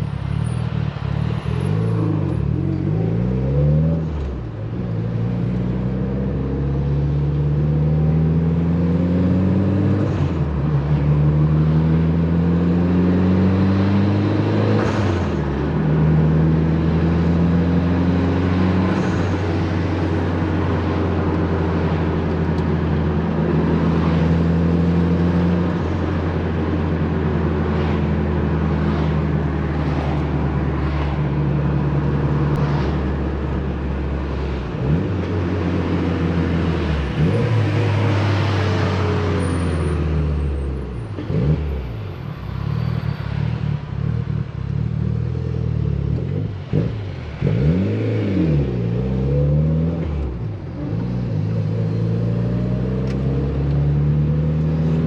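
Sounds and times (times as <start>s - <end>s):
car engine revving: 43.8s - 55.0s.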